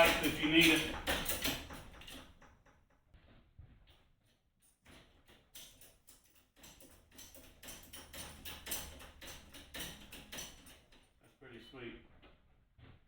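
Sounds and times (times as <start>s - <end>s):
hydraulic jack clicking and creaking: 0.0s - 2.7s, 5.2s - 11.1s.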